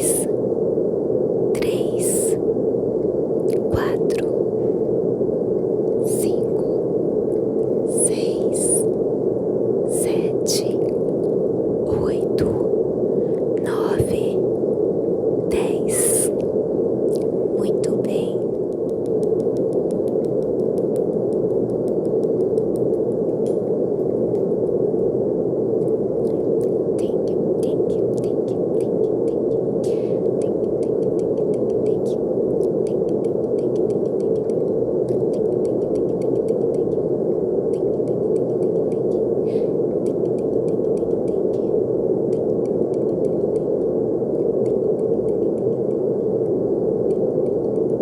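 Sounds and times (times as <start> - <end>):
brown noise hiss: 0.0 - 48.0
faint irregular clicks: 16.3 - 25.0, 25.7 - 48.0
faint ticks: 18.4 - 24.8, 25.8 - 48.0.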